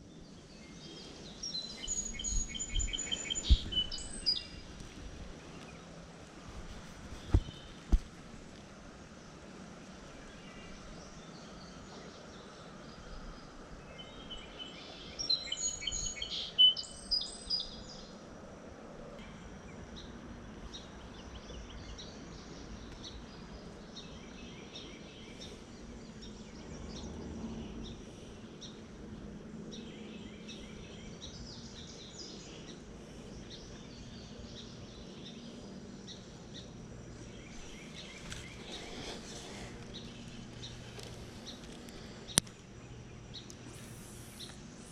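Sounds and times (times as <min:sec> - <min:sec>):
birds singing and chirping: 0:00.0 - 0:06.0, 0:10.2 - 0:18.2, 0:29.6 - 0:44.9
faint outdoor background: 0:00.0 - 0:44.9.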